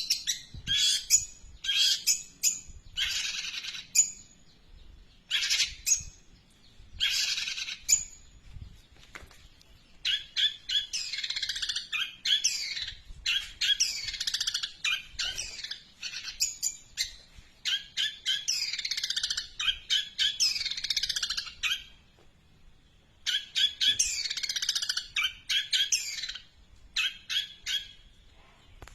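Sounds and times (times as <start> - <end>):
bird singing chirps and whistles: 0.0 - 4.3, 10.0 - 22.0, 23.2 - 28.1.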